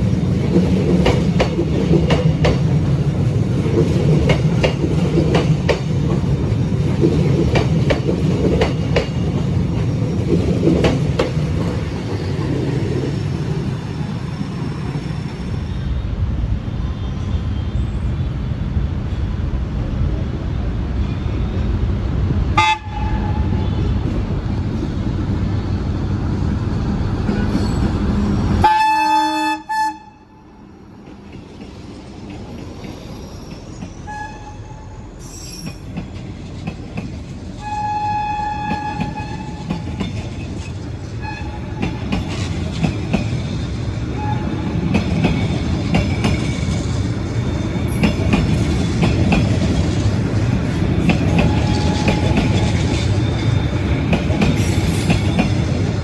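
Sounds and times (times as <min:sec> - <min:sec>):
train rumble: 0:00.0 - 0:56.0
train horn blasts: 0:22.6 - 0:24.0, 0:28.6 - 0:30.4, 0:34.1 - 0:35.0, 0:37.6 - 0:39.7, 0:44.1 - 0:44.7, 0:51.3 - 0:52.6.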